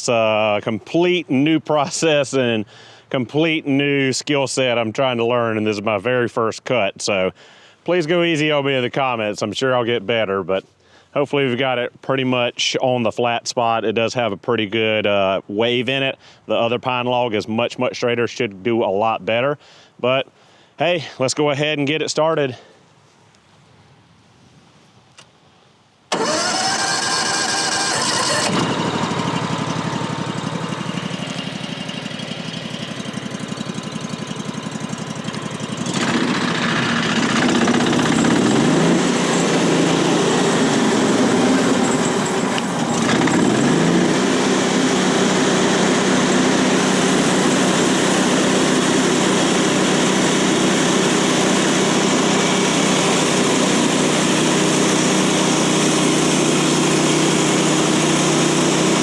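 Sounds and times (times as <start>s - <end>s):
gas engine running: 26.1s - 59.0s
band saw blade running: 35.2s - 59.0s.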